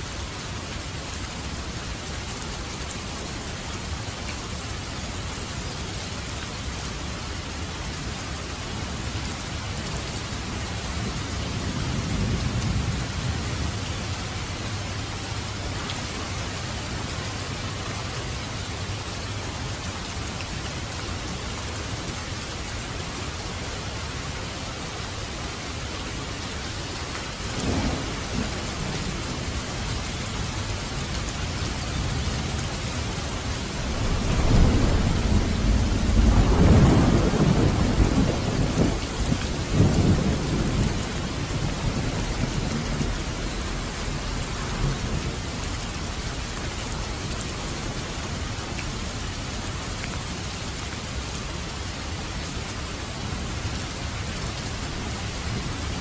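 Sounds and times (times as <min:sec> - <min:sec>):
steady rain falling: 0:00.0 - 0:56.0
thunder rolling: 0:27.6 - 0:29.5, 0:33.6 - 0:43.4.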